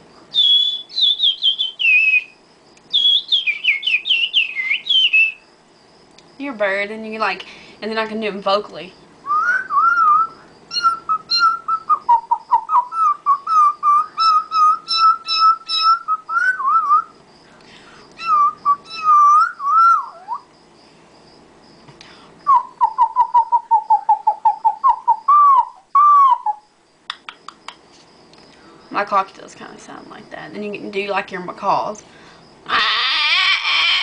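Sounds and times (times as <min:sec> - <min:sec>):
person whistling bird chirps: 0:00.3 - 0:05.4, 0:09.3 - 0:17.1, 0:18.2 - 0:20.5, 0:22.4 - 0:26.7.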